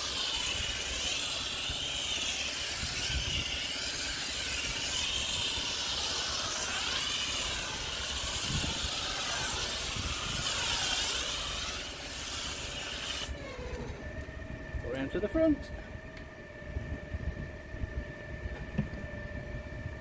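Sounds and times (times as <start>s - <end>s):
pressure washer spray hissing: 0.0s - 13.8s.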